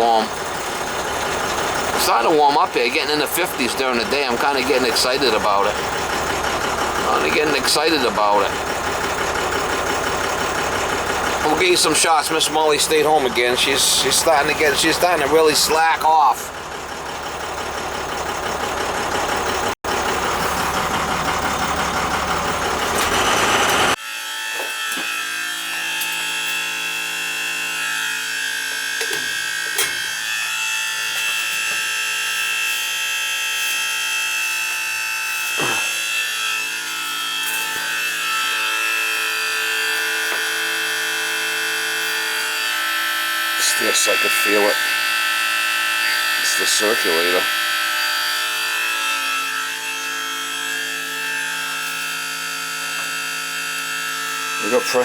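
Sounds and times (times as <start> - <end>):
circulator pump squealing: 0.0 - 24.0, 28.6 - 55.0
vehicle running: 0.0 - 24.0.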